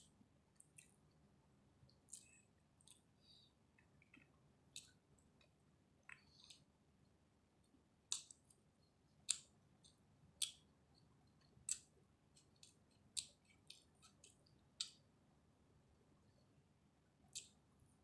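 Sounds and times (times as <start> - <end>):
person chewing with wet smacks: 1.9 - 3.1, 3.8 - 6.7.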